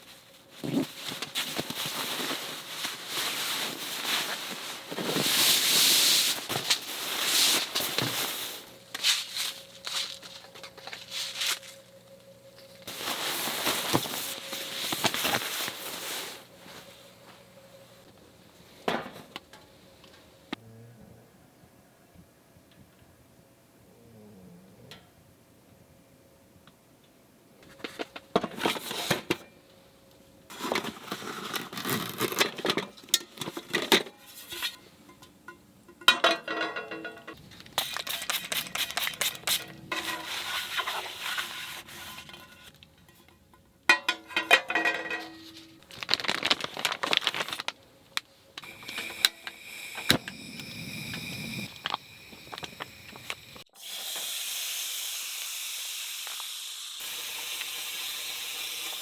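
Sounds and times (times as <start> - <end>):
packaging rustling and tearing: 30.5 - 32.7, 45.8 - 48.9
cookware clinking: 35.1 - 37.4, 43.0 - 45.8
food sizzling in a pan: 48.6 - 59.0.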